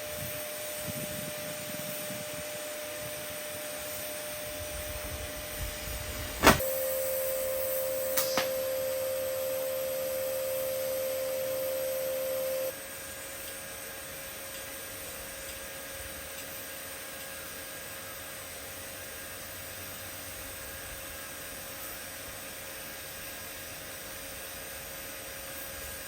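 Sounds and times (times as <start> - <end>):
welding arc humming whine: 0.0 - 26.0
welding arc strike crack: 6.1 - 6.8, 8.1 - 8.6.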